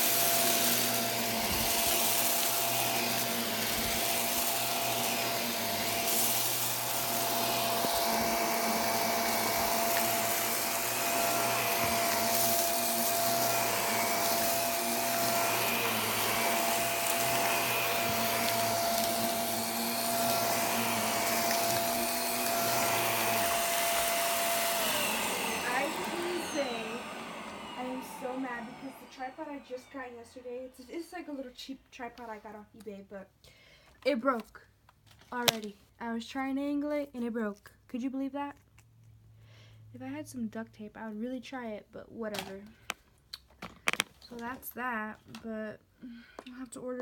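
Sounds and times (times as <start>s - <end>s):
vacuum cleaner running: 0.0s - 31.5s.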